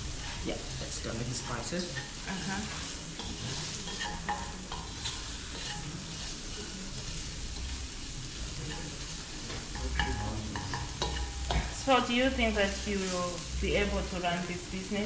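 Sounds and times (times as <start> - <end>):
utensil stirring and scraping: 0.0 - 11.8
chicken sizzling in pan: 0.0 - 15.0.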